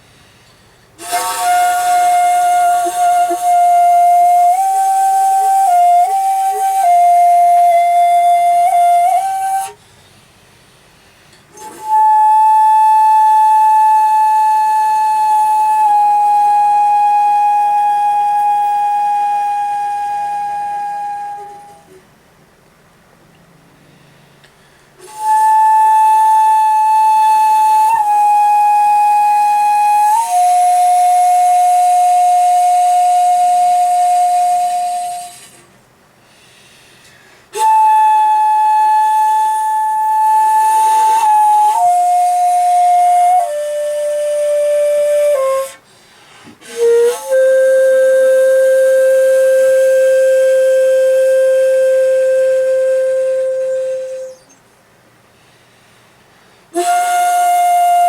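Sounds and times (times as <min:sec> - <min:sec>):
shakuhachi flute long tones: 0:00.0 - 0:22.1, 0:24.8 - 0:54.9, 0:56.6 - 0:58.0.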